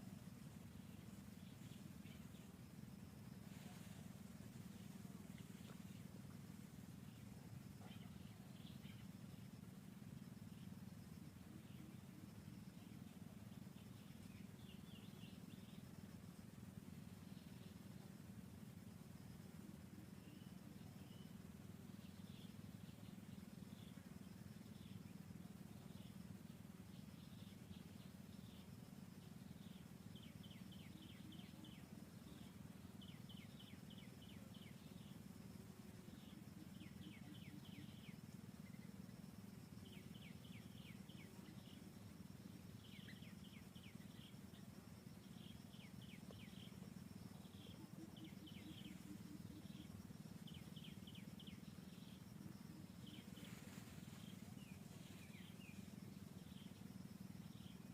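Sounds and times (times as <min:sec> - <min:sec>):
low steady hum: 0:00.0 - 0:57.9
thin steady high tone: 0:29.4 - 0:57.9.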